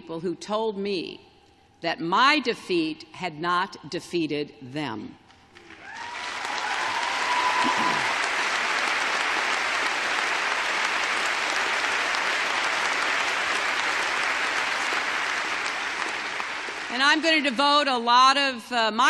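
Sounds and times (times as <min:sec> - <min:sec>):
large audience applauding: 0:05.5 - 0:17.6.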